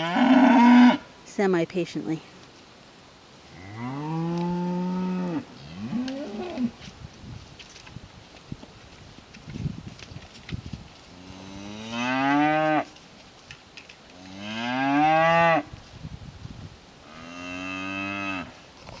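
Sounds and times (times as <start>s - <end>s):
cow mooing: 0.0s - 1.0s, 3.6s - 6.7s, 11.3s - 12.9s, 14.3s - 15.6s, 17.1s - 18.6s.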